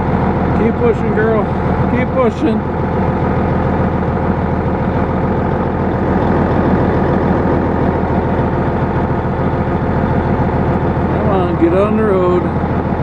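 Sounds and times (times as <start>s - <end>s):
heavy diesel engine running: 0.0s - 13.0s.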